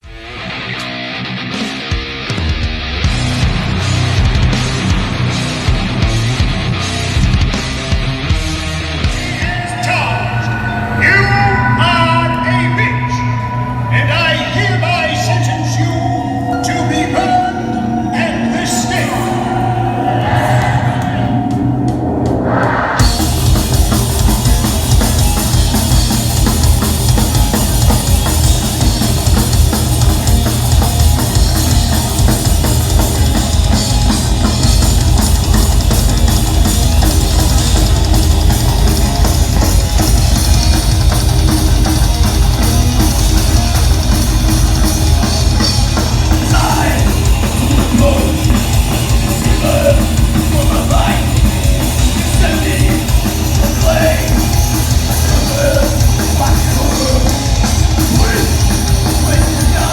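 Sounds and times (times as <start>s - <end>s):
live heavy metal band: 0.0s - 59.9s
pounding drum kit: 1.6s - 16.5s, 17.4s - 59.9s
person singing or yelling: 9.2s - 21.8s, 45.2s - 59.9s.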